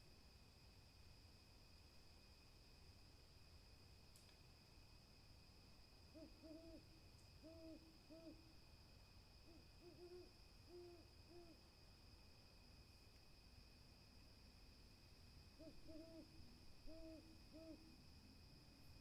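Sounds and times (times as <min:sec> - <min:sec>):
distant owl hooting: 0:06.1 - 0:08.4, 0:09.5 - 0:11.6, 0:15.6 - 0:17.9.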